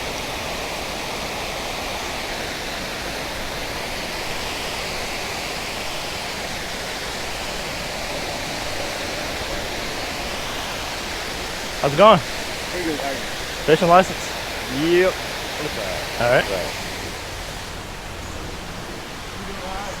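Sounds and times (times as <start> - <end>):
water rushing over spillway: 0.0 - 20.0.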